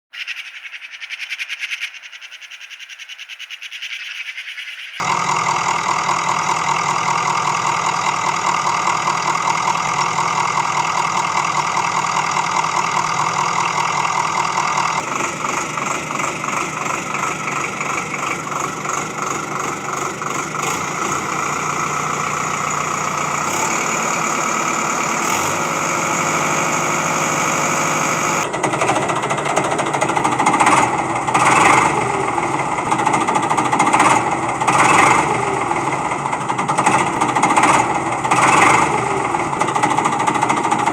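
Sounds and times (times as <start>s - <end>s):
small motor buzzing rattle: 11.5s - 40.9s.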